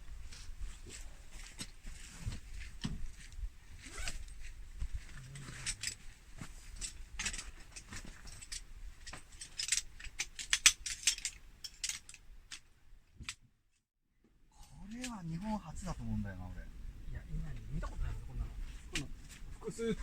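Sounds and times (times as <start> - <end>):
small objects clicking and rustling: 5.1 - 6.0, 6.7 - 12.6.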